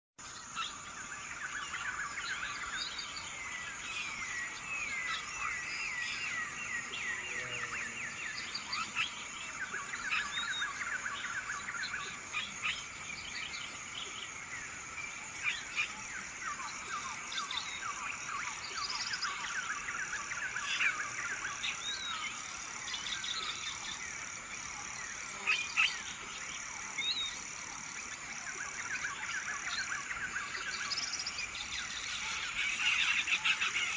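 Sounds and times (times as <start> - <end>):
birds chirping and singing: 0.3 - 33.9.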